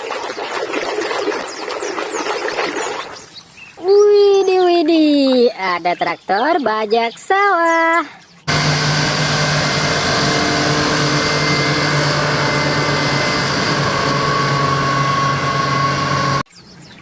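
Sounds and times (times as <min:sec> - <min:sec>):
pressure washer spraying water: 0:08.5 - 0:16.5.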